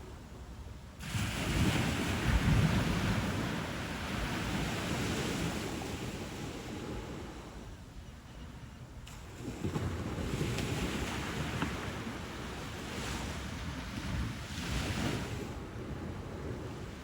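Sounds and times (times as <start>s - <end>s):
wind on microphone: 0.0s - 17.0s
ocean wave breaking: 1.0s - 7.7s.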